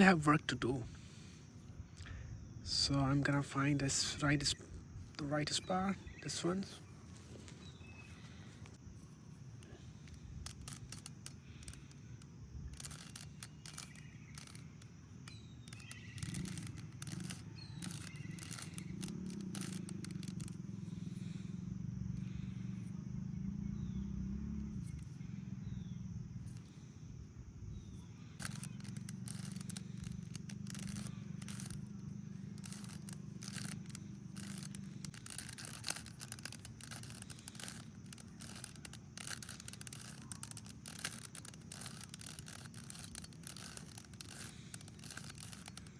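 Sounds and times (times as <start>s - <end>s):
puzzle cube clicking: 9.0s - 21.4s, 27.9s - 45.9s.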